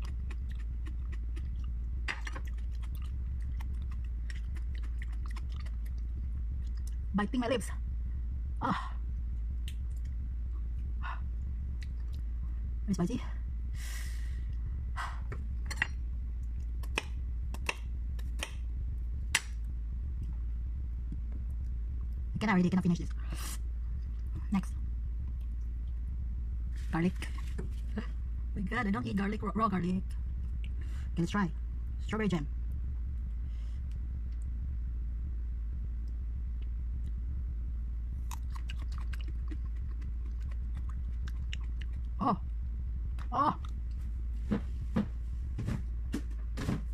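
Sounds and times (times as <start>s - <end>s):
raw onion being chewed: 0.0s - 7.1s, 38.1s - 46.4s
steady low hum: 0.0s - 46.9s.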